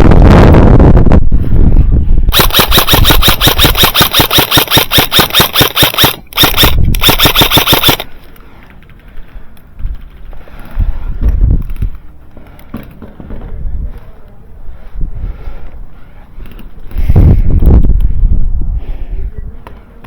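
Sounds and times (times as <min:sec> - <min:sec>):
airsoft gun firing bursts: 0:02.3 - 0:08.1.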